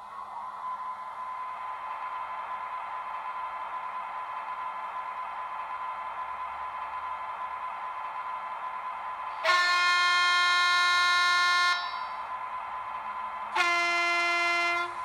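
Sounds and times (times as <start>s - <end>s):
faint steady whine: 0.0s - 15.0s
model train horn blasts: 9.4s - 12.2s, 13.5s - 15.0s.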